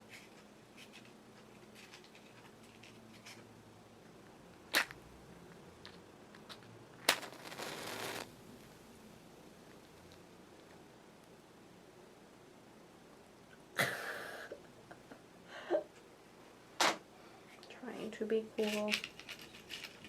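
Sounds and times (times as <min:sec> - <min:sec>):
match striking box: 0:04.8 - 0:05.0, 0:06.4 - 0:08.3
match flaring with hiss: 0:07.0 - 0:08.8.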